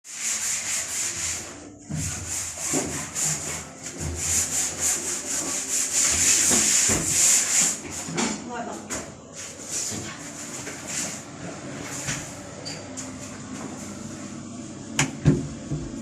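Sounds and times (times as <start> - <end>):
hand sanding strokes: 0.0 - 8.2, 9.4 - 12.3.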